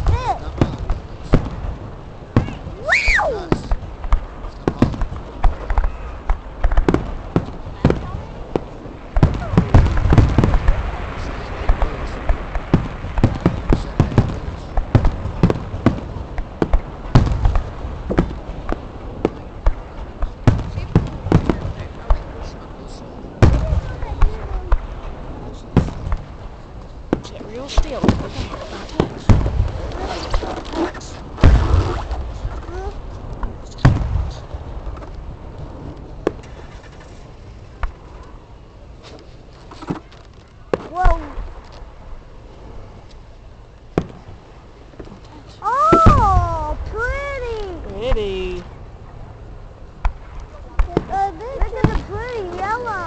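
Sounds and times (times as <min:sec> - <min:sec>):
low rumble: 0:00.0 - 0:39.6
fireworks booming: 0:00.0 - 0:53.0.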